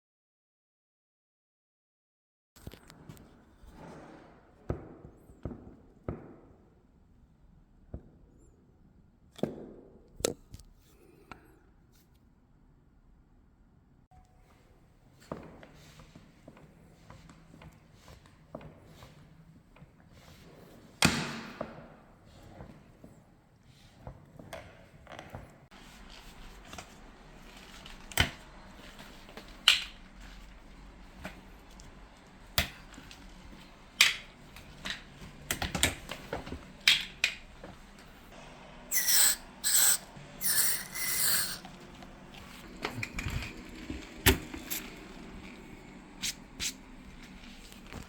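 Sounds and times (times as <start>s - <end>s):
spray grease hissing: 38.9s - 41.6s.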